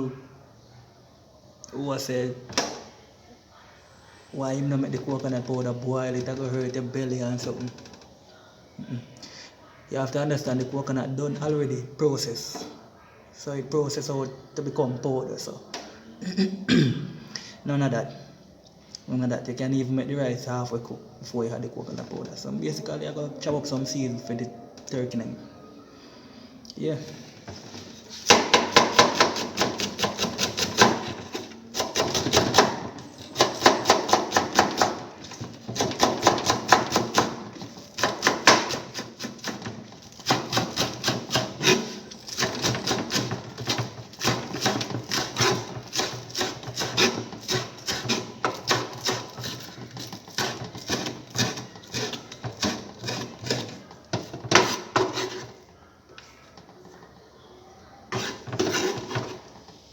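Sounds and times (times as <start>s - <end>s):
knife chopping on cutting board: 28.2s - 55.5s, 58.1s - 59.4s.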